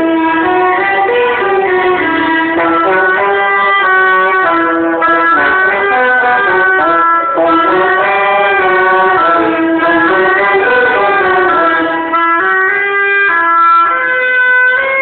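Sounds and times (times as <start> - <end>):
quintet playing chords: 0.0 - 15.0
trumpet and trombone: 0.0 - 15.0.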